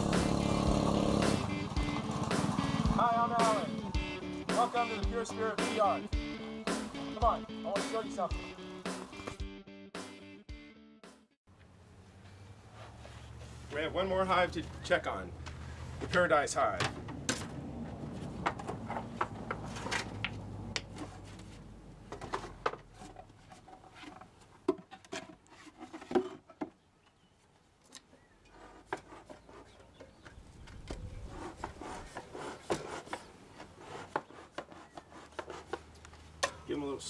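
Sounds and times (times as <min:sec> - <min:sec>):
rubbing and scraping: 0:17.4 - 0:26.7, 0:27.8 - 0:36.3.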